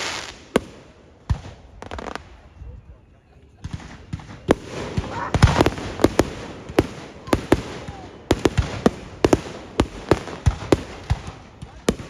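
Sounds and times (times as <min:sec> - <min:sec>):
fireworks bangs and cracks: 0:00.0 - 0:02.5, 0:03.6 - 0:12.0.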